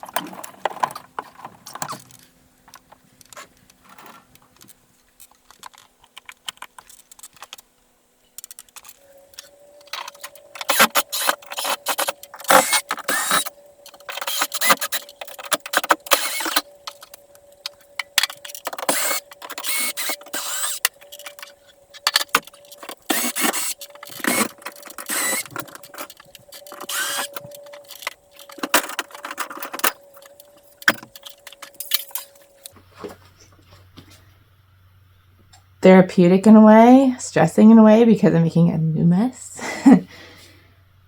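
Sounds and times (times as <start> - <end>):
faint steady hum: 0.0 - 41.0.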